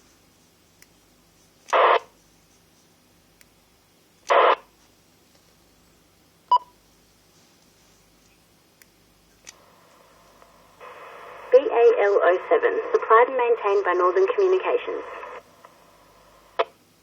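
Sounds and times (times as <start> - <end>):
low background hiss: 0.0 - 17.0
radio static bursts: 1.7 - 2.1, 4.3 - 4.7, 10.8 - 15.8.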